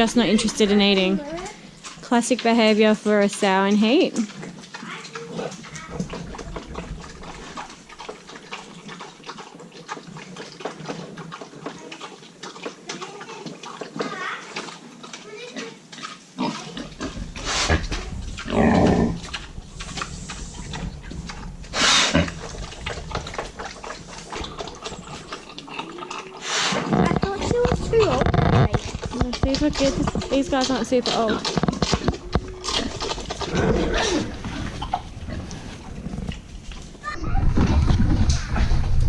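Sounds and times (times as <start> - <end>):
pig grunting and moaning: 16.4 - 36.3.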